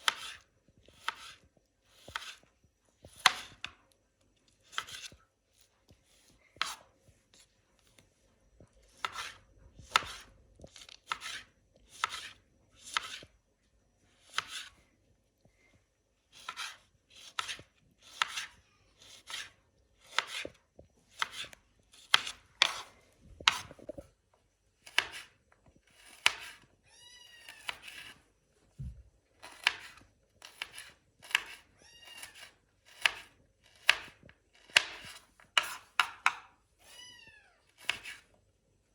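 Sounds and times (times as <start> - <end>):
knife chopping on cutting board: 0.0 - 2.4, 3.1 - 3.7, 4.6 - 5.2, 9.0 - 10.3, 11.1 - 13.3, 14.3 - 14.7, 16.4 - 20.6, 21.2 - 24.0, 24.9 - 25.3, 26.0 - 26.6, 27.6 - 28.2, 28.8 - 36.5, 37.8 - 38.2.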